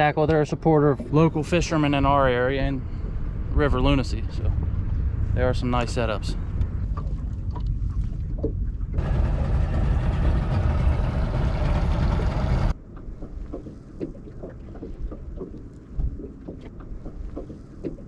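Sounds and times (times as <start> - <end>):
wind buffeting microphone: 0.0 - 13.6
motorboat engine rumble: 0.0 - 18.0.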